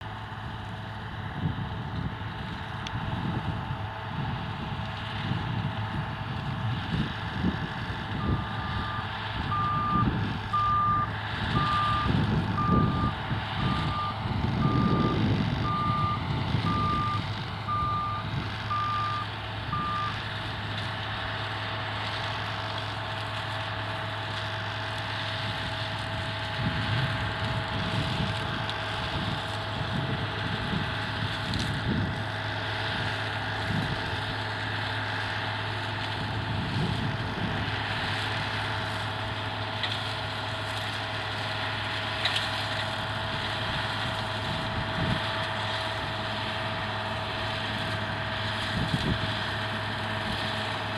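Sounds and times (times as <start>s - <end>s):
heavy machinery engines running: 0.0s - 50.9s
reversing alarm beeping: 8.2s - 20.2s.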